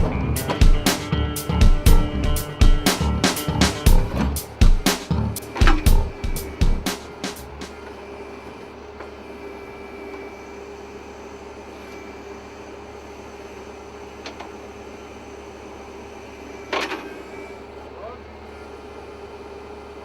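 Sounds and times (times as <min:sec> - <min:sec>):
sharp knock: 0:00.0 - 0:07.4
mechanical hum with faint tone: 0:00.0 - 0:20.0.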